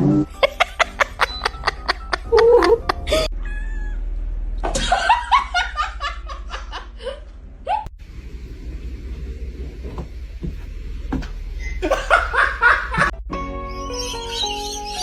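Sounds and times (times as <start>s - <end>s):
person laughing: 0.3s - 3.9s, 4.7s - 7.9s, 11.8s - 13.2s
cat meowing: 3.3s - 4.1s.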